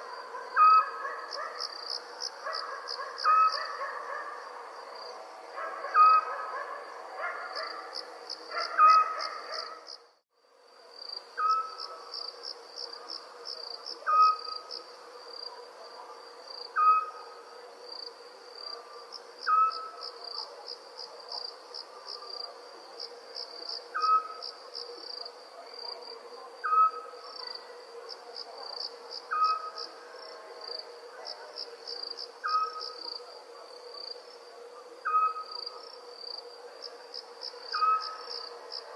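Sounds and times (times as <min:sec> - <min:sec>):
crickets trilling: 0:00.0 - 0:38.9.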